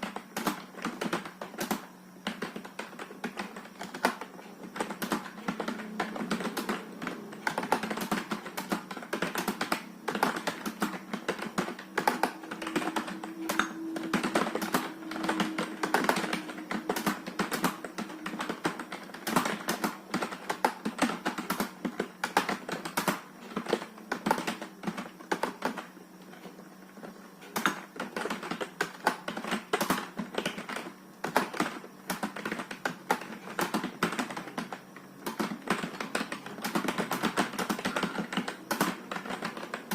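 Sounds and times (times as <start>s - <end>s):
faint steady hum: 0.0s - 39.9s
keyboard key clicks: 4.9s - 23.2s.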